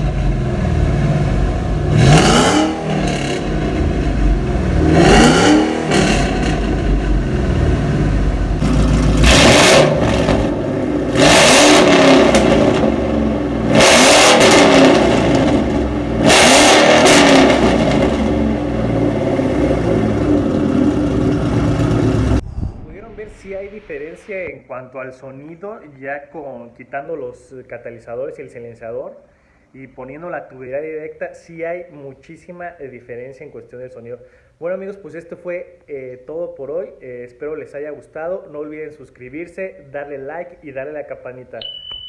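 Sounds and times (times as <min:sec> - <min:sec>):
car engine idling and revving: 0:00.0 - 0:22.4.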